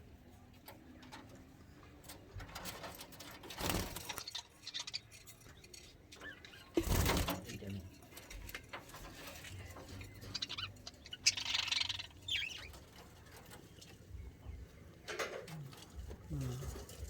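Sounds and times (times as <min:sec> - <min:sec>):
faint clicks and scratches: 0:00.3 - 0:17.0
budgerigars chirping: 0:09.9 - 0:15.0.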